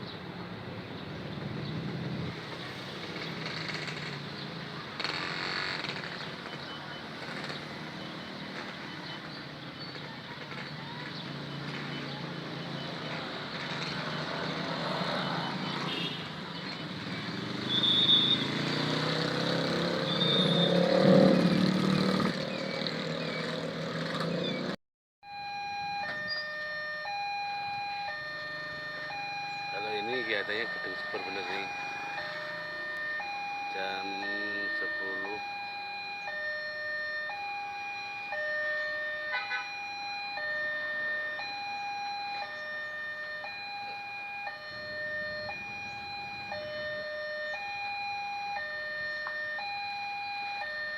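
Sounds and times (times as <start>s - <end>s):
crossing warning alarm beeping: 5.0s - 9.5s, 11.4s - 16.2s, 25.2s - 50.9s.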